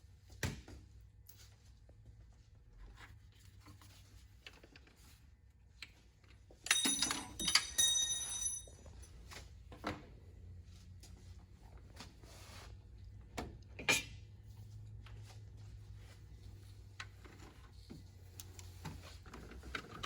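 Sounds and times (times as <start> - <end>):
metal tools clattering and ringing: 6.6 - 9.2.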